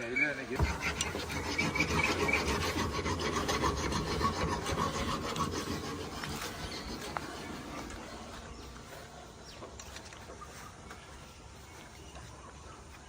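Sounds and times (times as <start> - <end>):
saw rasping on wood: 0.3 - 8.3.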